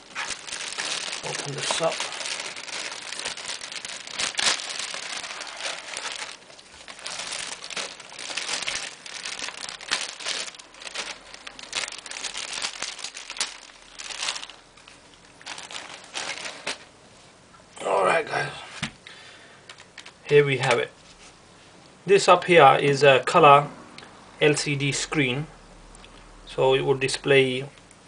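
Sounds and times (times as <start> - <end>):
plastic packaging crinkling: 0.0 - 16.9, 19.7 - 20.9.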